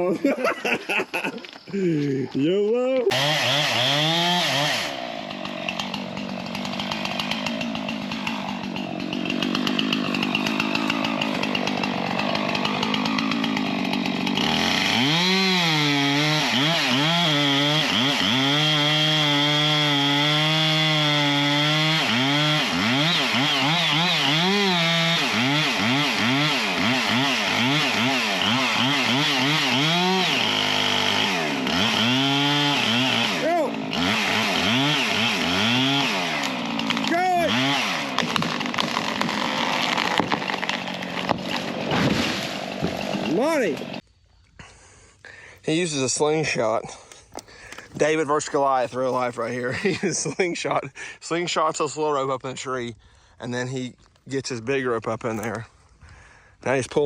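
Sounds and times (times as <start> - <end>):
chainsaw cutting into tree: 3.1 - 44.1, 47.1 - 50.4.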